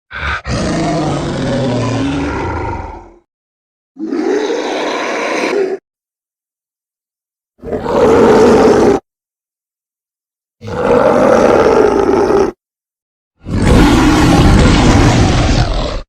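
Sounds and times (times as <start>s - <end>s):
deep monster roar: 0.1s - 3.3s, 7.6s - 9.0s, 10.6s - 12.6s, 13.4s - 16.0s.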